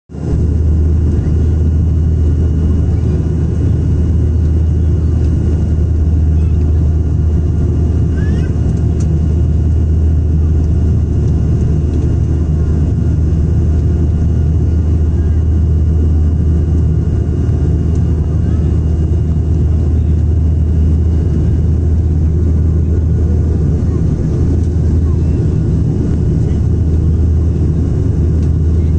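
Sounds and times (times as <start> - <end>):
propeller and engine drone: 0.1 - 28.9.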